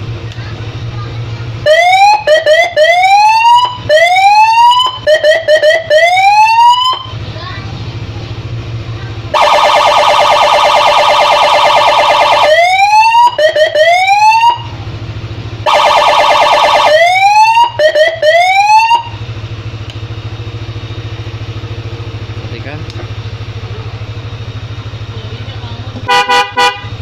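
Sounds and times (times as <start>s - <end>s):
engine idling: 0.0s - 27.0s
electronic siren warbling and whooping: 1.6s - 7.1s, 9.3s - 14.7s, 15.6s - 19.2s.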